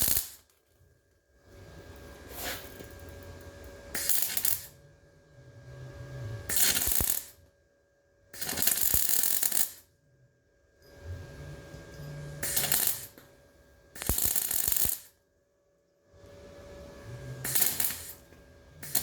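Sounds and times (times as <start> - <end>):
arc welding crackling and sizzling: 0.0 - 0.7, 1.5 - 4.8, 6.4 - 7.4, 8.4 - 9.9, 12.3 - 13.3, 13.9 - 15.2, 17.2 - 19.0.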